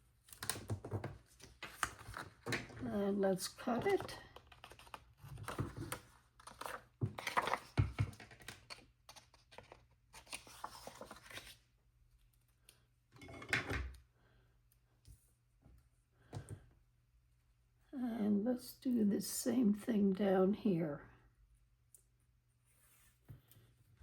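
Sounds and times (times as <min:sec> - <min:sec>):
paper rustling: 0:00.2 - 0:02.8, 0:03.6 - 0:11.6.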